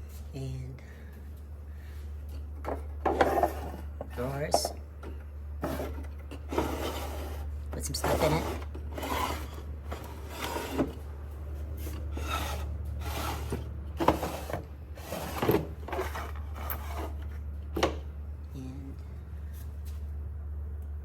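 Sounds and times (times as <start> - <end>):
wooden drawers sliding: 2.7 - 4.8, 5.6 - 11.0, 11.8 - 18.0.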